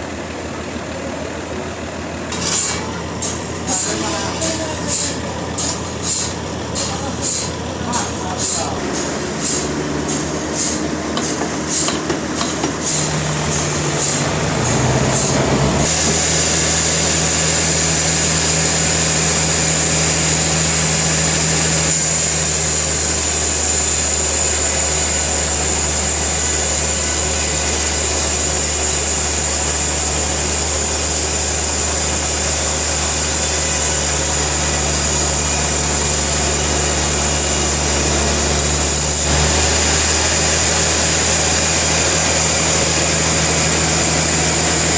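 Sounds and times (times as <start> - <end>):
sawmill machinery humming: 0.0 - 44.9.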